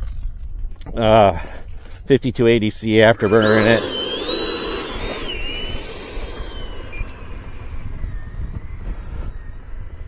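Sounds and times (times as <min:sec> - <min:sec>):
electric ducted fan whine: 0:03.1 - 0:10.0
wind rumble on microphone: 0:03.3 - 0:10.0.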